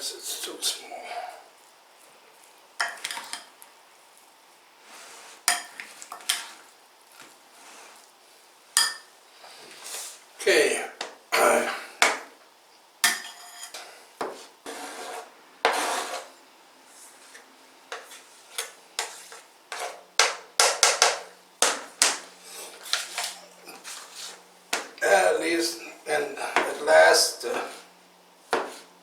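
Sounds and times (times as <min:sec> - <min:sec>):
knife scraping: 0:13.0 - 0:16.4, 0:17.1 - 0:20.0.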